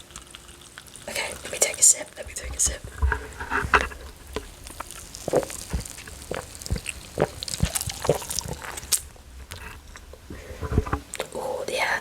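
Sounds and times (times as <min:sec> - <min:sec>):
sipping and swallowing gulps: 0:02.2 - 0:11.4.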